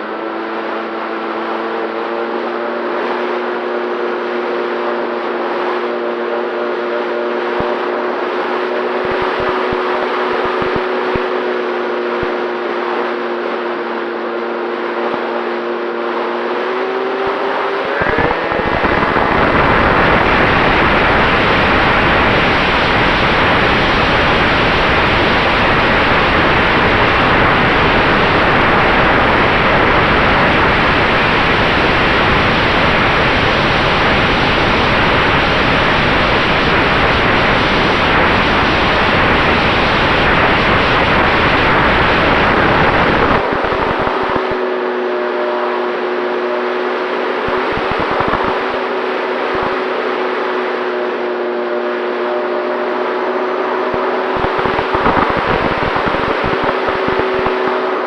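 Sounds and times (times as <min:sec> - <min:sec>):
loud rushing noise: 0:16.5 - 0:44.9, 0:47.1 - 0:58.0
electric motor humming: 0:17.8 - 0:21.6.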